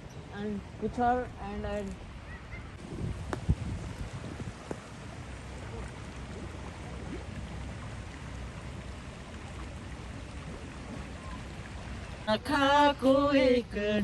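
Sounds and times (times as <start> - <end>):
running water rushing: 0.0 - 14.0.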